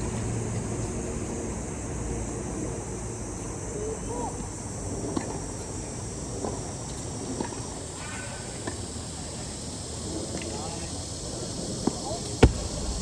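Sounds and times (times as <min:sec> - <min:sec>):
faint high insect-like tone: 0:00.0 - 0:13.0
open-air background noise: 0:00.0 - 0:13.0
tennis ball impacts: 0:12.4 - 0:13.0.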